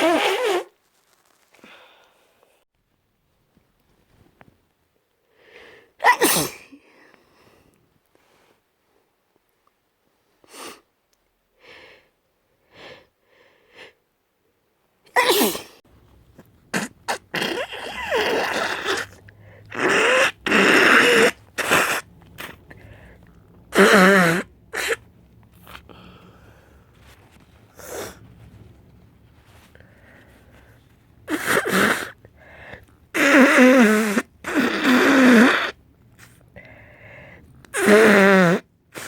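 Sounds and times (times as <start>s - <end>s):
person blowing nose: 0.0s - 0.8s, 6.0s - 6.6s, 15.2s - 15.8s, 16.7s - 25.0s, 25.6s - 28.3s, 29.5s - 36.4s, 37.7s - 39.0s
person sniffling: 25.6s - 28.3s.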